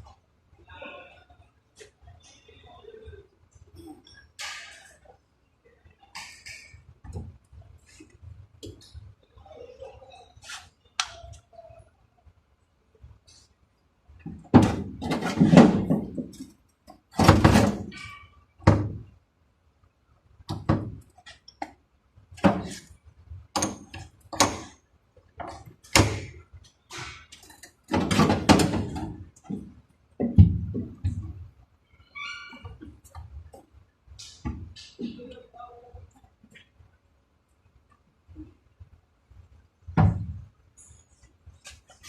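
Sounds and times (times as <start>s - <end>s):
metallic knocks and clattering: 14.2s - 19.1s, 25.4s - 31.4s.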